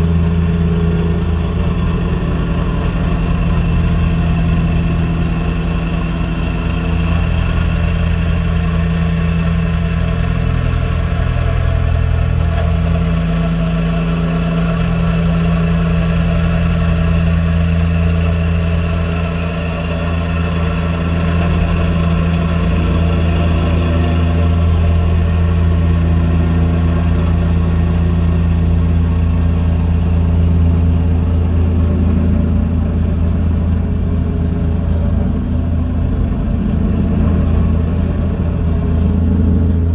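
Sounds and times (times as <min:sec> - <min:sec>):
excavator engine running: 0:00.0 - 0:39.9.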